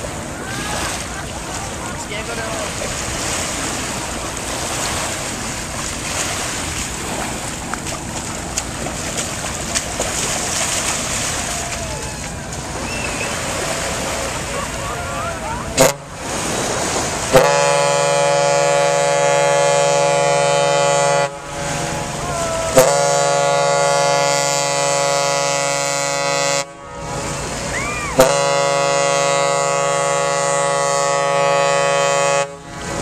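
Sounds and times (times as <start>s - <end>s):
ship's horn blasts: 11.0s - 33.0s.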